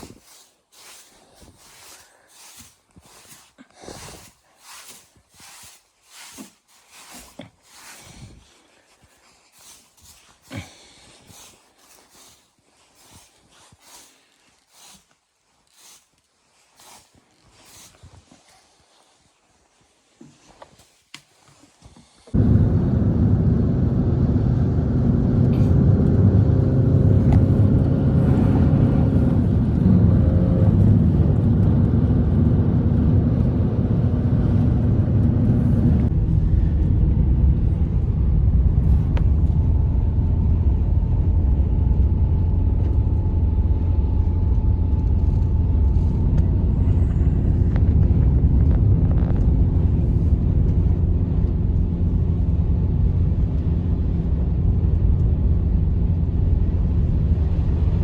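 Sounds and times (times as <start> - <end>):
loud low rumble: 22.4 - 58.0.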